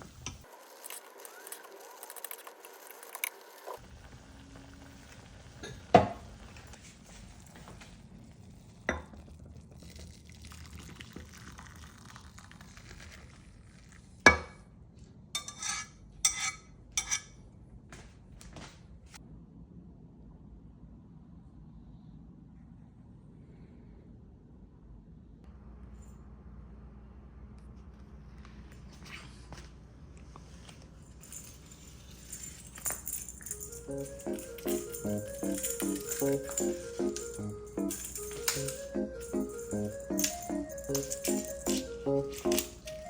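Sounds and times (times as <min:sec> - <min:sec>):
cookware knocking and clinking: 0:14.3 - 0:14.6.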